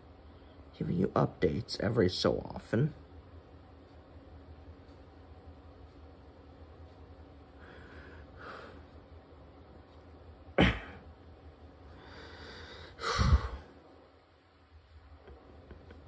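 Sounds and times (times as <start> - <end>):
person breathing: 7.6 - 9.0, 11.9 - 13.8.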